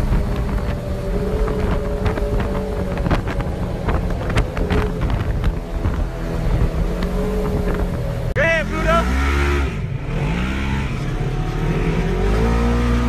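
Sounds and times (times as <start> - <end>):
wind buffeting microphone: 0.0 - 8.4
engine running: 0.0 - 13.0.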